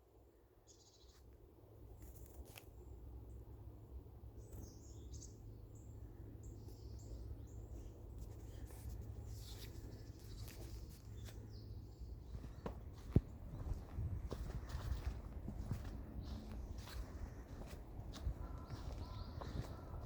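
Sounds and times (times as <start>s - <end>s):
low steady rumble: 2.9s - 20.0s
small birds calling: 4.4s - 20.0s.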